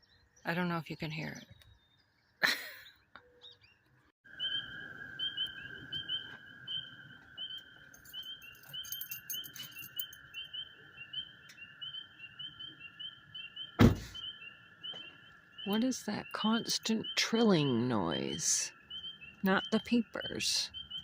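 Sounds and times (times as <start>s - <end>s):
loud knock: 13.8s - 14.2s.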